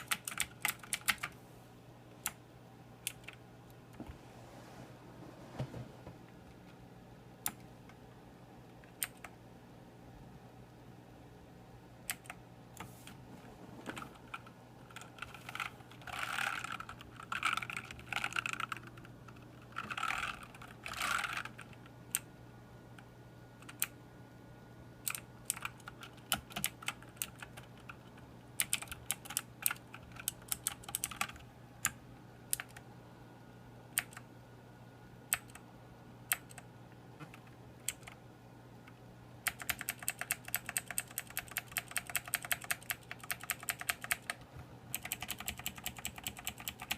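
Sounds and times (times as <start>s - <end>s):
mechanical keyboard keys clicking: 0.0s - 1.4s, 8.9s - 9.3s, 12.1s - 12.4s, 25.1s - 32.8s, 36.3s - 36.6s, 37.4s - 38.2s, 39.4s - 46.9s.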